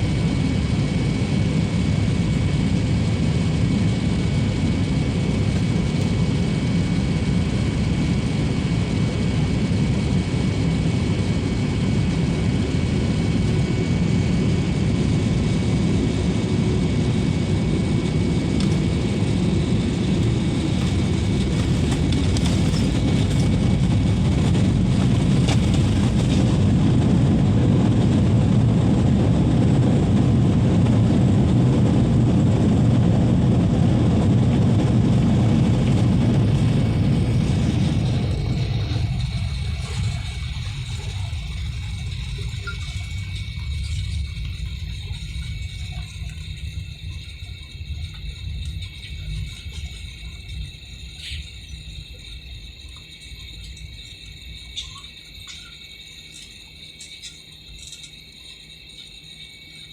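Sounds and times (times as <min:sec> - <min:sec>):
airliner cabin engine roar: 0:00.0 - 0:59.9.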